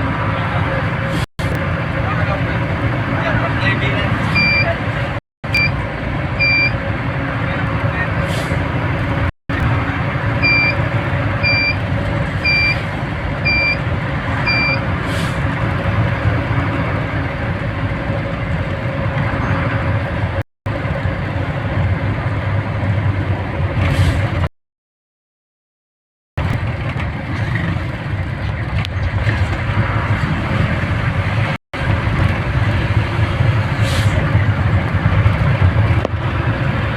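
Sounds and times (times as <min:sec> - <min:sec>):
vehicle engine and road noise: 0:00.0 - 0:24.5, 0:26.4 - 0:36.9
short high beeps: 0:04.4 - 0:04.7, 0:05.5 - 0:05.8, 0:06.4 - 0:06.7, 0:10.4 - 0:10.8.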